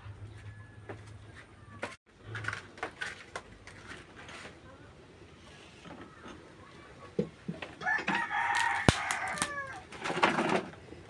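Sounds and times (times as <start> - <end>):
rooster crowing: 7.8 - 9.9.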